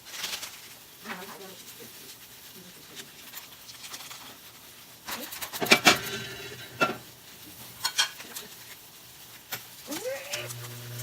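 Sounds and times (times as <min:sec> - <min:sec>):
tableware clicks and knocks: 0:05.5 - 0:07.0, 0:07.8 - 0:08.2
eating sounds: 0:07.4 - 0:10.9.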